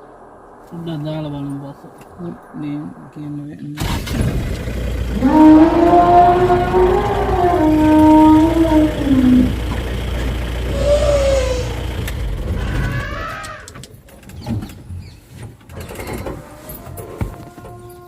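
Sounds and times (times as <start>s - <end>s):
low rumble: 0.0s - 13.6s
elephant calls: 5.1s - 13.8s.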